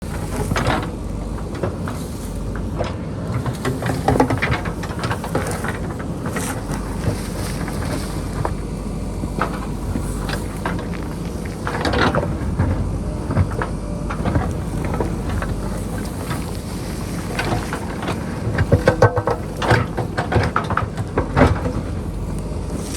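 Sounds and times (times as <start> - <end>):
diesel engine running: 0.0 - 22.9
rock and earth knocking and scraping: 0.0 - 22.9.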